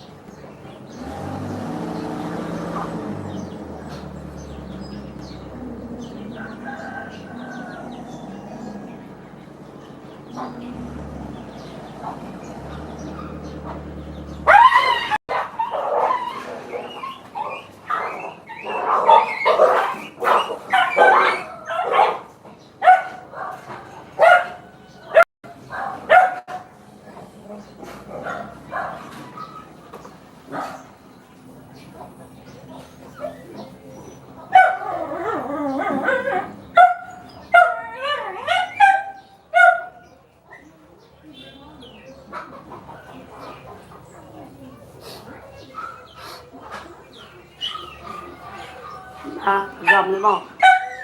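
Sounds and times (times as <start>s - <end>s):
dog whining and yipping: 14.4s - 21.5s, 34.6s - 39.2s, 47.6s - 51.0s.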